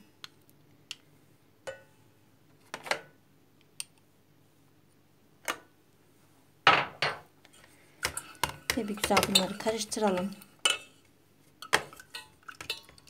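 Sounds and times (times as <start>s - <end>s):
kitchen utensils and dishes clicking: 8.0s - 10.8s.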